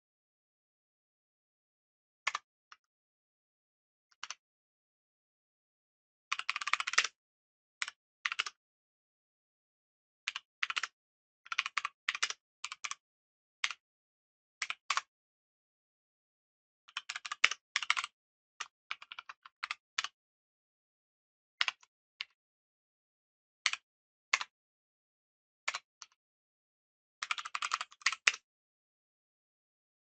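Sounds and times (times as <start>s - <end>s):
keyboard typing: 27.3s - 28.4s.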